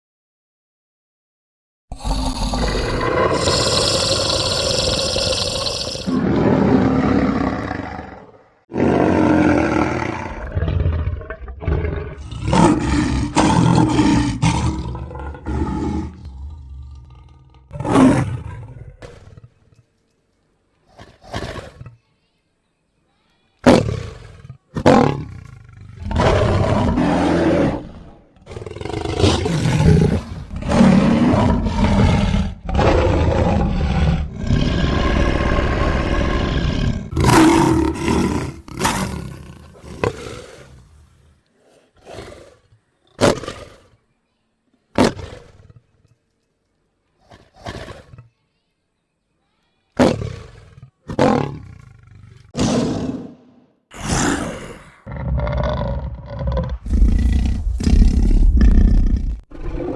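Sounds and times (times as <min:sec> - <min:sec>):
lion roaring: 0:01.9 - 0:19.5, 0:23.7 - 0:42.6, 0:50.0 - 0:59.9
lion grunts: 0:01.9 - 0:19.6, 0:20.8 - 0:22.0, 0:23.7 - 0:44.0, 0:47.2 - 0:48.3, 0:50.0 - 0:59.9.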